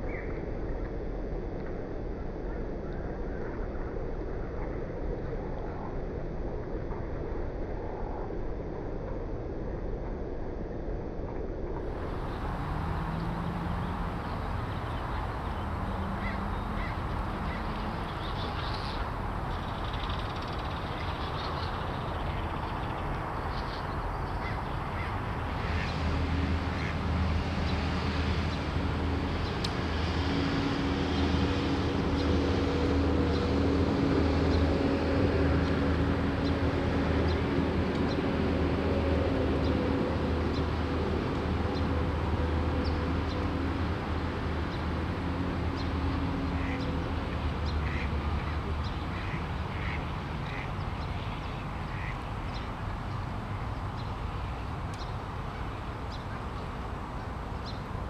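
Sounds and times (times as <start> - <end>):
low engine hum: 0.1 - 58.0
geese honking: 13.0 - 19.1, 47.8 - 50.8, 51.9 - 52.2
ducks quacking: 15.9 - 19.0, 46.6 - 46.9, 47.7 - 51.1, 51.8 - 52.3.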